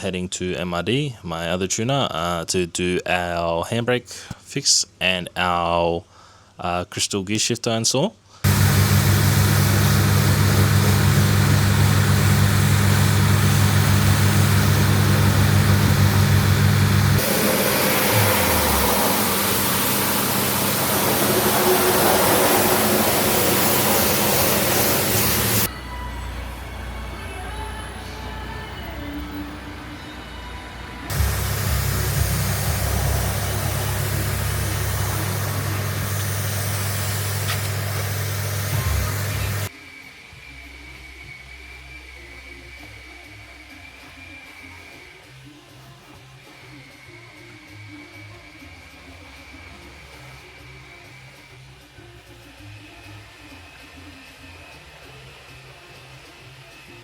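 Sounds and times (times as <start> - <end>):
car engine droning: 8.5 - 39.7.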